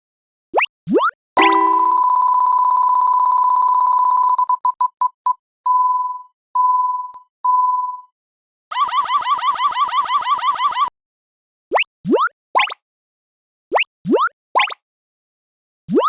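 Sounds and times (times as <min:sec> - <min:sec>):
railroad crossing bell ringing: 0:01.4 - 0:02.1.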